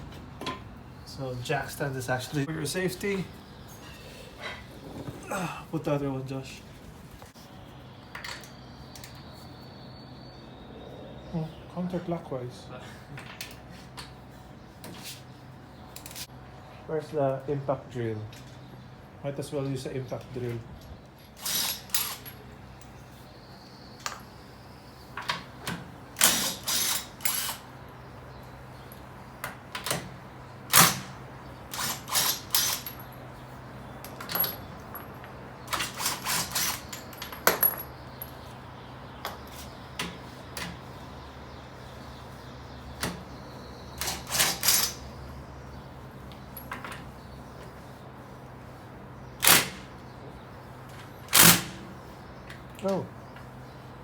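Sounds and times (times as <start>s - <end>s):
metal tools clinking: 34.0s - 38.5s.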